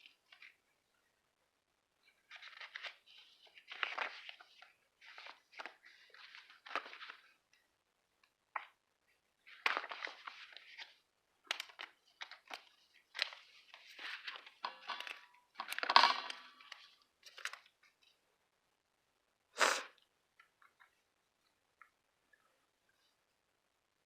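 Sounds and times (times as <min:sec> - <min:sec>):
paper crinkling and rustling: 0:02.1 - 0:07.5, 0:09.4 - 0:18.2.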